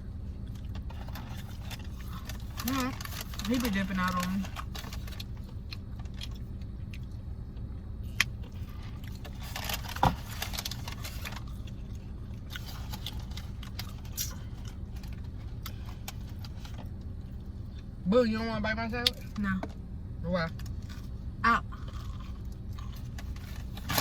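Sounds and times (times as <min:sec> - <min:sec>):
steady low rumble: 0:00.0 - 0:24.0
chewing: 0:00.4 - 0:17.9, 0:20.6 - 0:24.0
food packaging crinkling: 0:01.0 - 0:05.5, 0:09.0 - 0:16.8.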